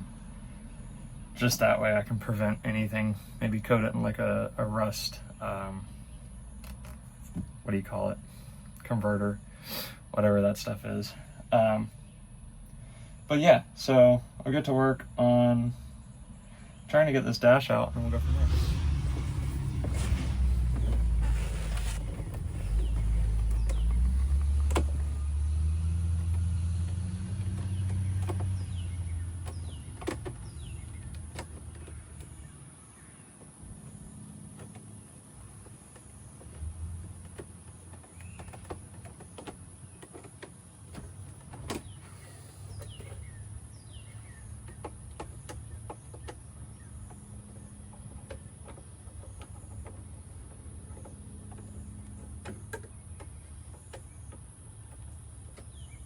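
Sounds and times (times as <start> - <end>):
low rumble: 17.6 - 29.6.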